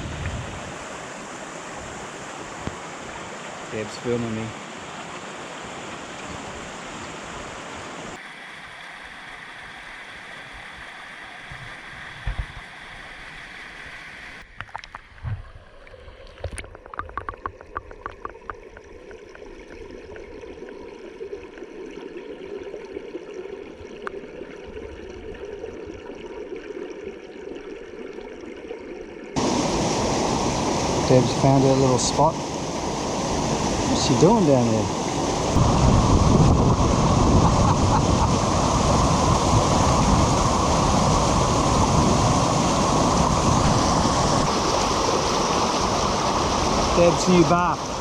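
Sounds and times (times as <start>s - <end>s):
creek and waterfall rushing: 0.0s - 14.4s, 29.4s - 48.0s.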